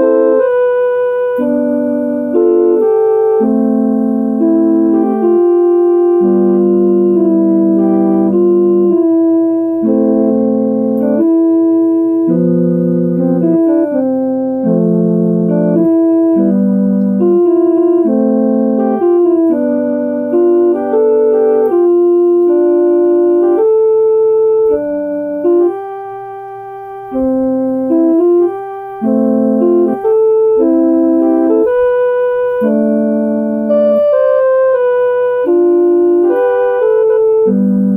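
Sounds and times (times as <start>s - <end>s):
electronic keyboard playing chords: 0.0s - 37.9s.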